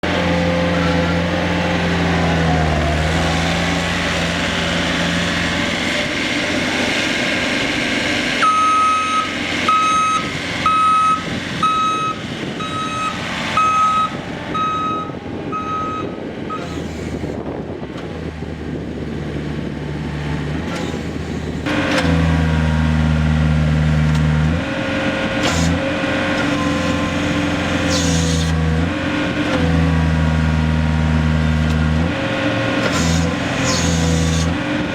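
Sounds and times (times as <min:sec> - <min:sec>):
diesel engine running: 0:00.0 - 0:34.9
reversing alarm beeping: 0:08.4 - 0:16.7.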